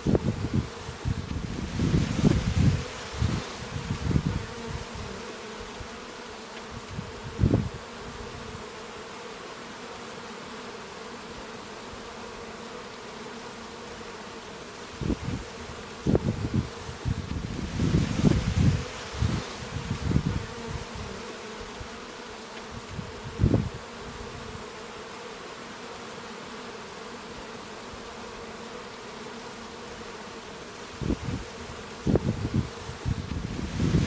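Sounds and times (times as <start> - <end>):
low gusts of sound: 0.0 - 5.9, 14.9 - 21.9, 31.0 - 34.0
bees buzzing: 0.0 - 34.0.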